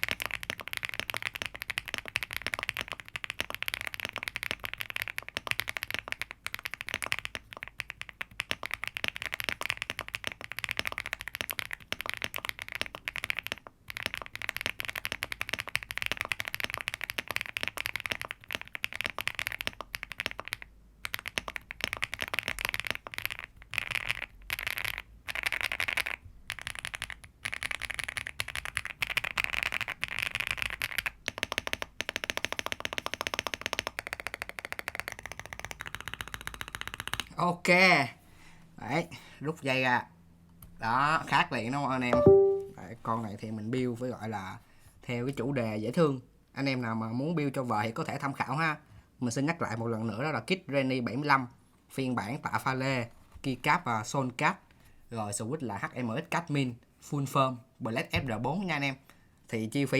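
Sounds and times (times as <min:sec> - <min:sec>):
fast mechanical keyboard typing: 0:00.0 - 0:37.3.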